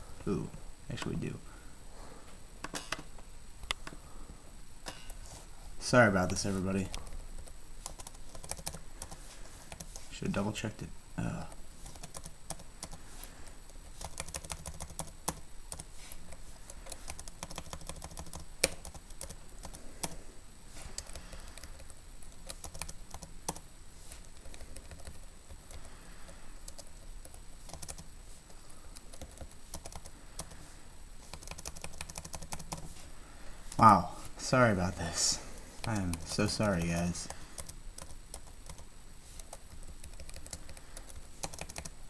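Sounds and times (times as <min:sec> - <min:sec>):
typing on keyboard: 0:06.2 - 0:09.9, 0:11.8 - 0:13.0, 0:14.0 - 0:15.9, 0:16.8 - 0:20.2, 0:21.0 - 0:23.6, 0:24.4 - 0:25.9, 0:26.7 - 0:28.1, 0:29.0 - 0:30.6, 0:31.3 - 0:32.8, 0:35.8 - 0:41.9.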